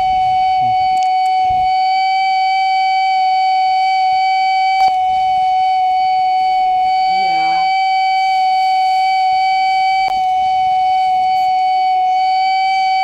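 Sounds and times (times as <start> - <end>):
parking sensor continuous buzzer: 0.0 - 13.0.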